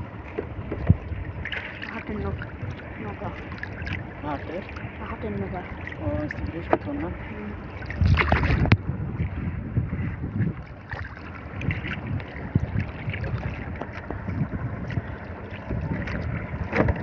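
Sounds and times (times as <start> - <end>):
sea water around boat: 0.0 - 17.0
wind buffeting microphone: 0.0 - 17.0.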